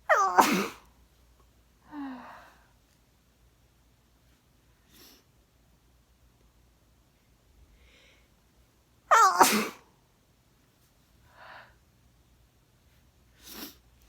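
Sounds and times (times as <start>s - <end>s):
person sneezing: 0.1s - 0.9s, 9.1s - 9.9s
faint breathing: 7.7s - 8.4s.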